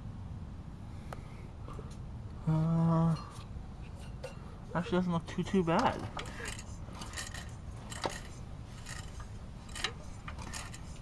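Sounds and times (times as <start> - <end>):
metallic clicks and clinks: 5.8 - 11.0.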